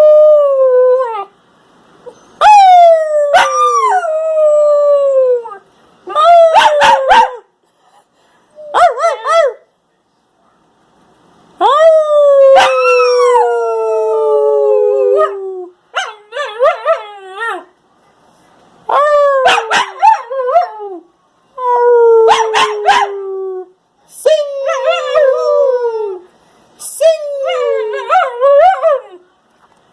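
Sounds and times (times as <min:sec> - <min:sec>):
puppy howling: 0:11.7 - 0:17.7, 0:24.6 - 0:26.2.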